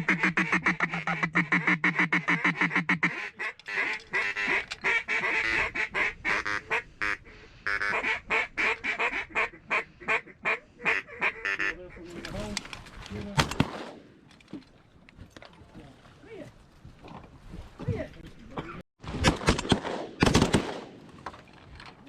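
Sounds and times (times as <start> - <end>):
duck quacking: 0.0 - 12.1.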